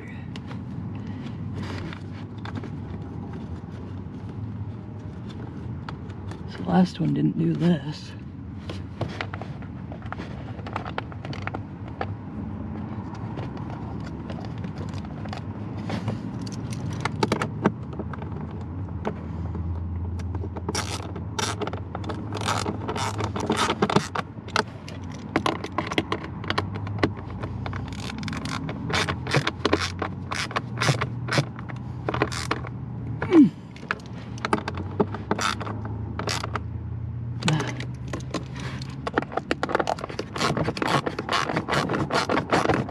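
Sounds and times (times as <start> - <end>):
tool clicks knocks and scrapes: 13.0 - 36.7, 37.4 - 42.9.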